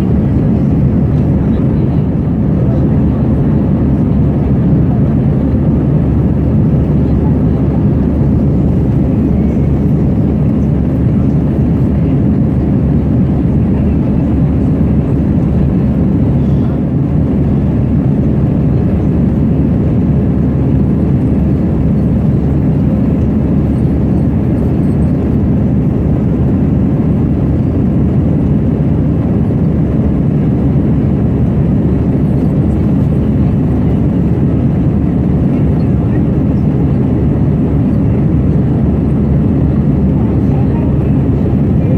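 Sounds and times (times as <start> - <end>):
jet engines rumbling in cabin: 0.0 - 41.9.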